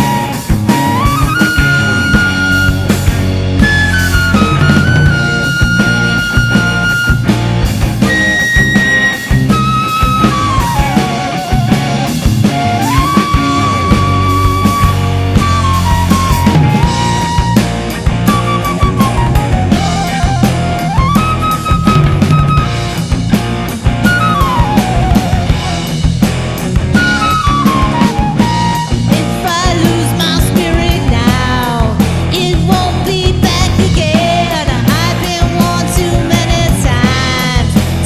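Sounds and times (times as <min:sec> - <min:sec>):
sliding lead melody: 0:00.0 - 0:30.7
drum kit: 0:00.0 - 0:38.0
guitar: 0:00.0 - 0:38.0
instrumental rock ballad: 0:00.0 - 0:38.0.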